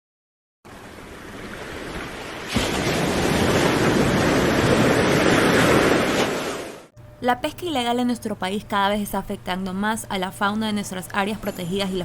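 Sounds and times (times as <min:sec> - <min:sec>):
ocean waves rushing: 0:00.7 - 0:06.9.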